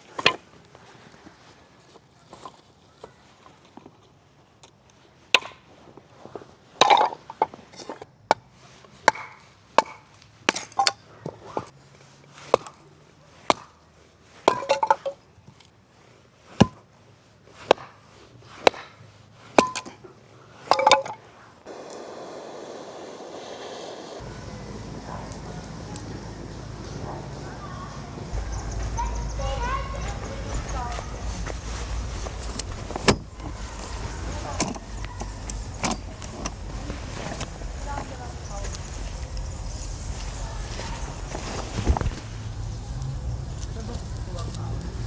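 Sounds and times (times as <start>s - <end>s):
axe chopping firewood: 9.0s - 11.0s, 13.5s - 13.8s, 17.6s - 18.0s, 18.6s - 19.0s, 19.6s - 20.0s
steady hiss: 21.7s - 45.0s.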